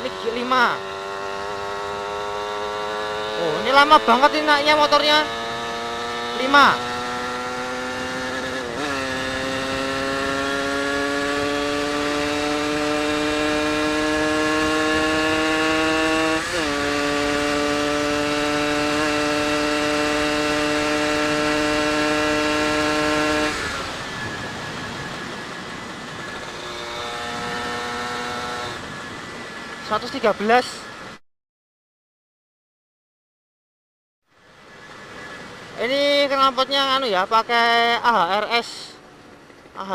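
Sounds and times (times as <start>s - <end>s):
two-stroke motorcycle engine revving: 0.0s - 31.2s
wind noise: 21.8s - 29.8s.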